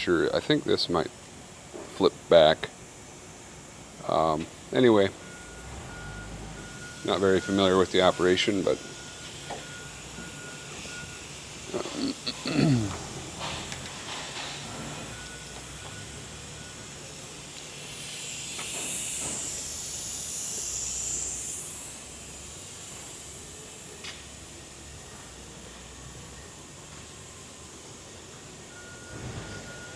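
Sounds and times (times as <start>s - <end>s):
compressed air hissing: 6.4s - 26.1s.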